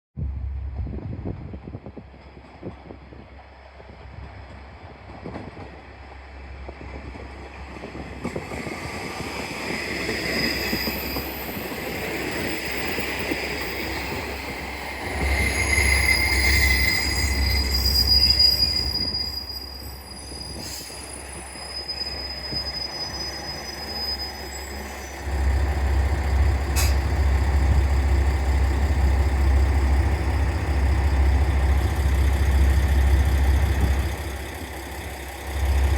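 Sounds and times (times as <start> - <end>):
train brakes and wheels squealing: 7.9 - 35.9.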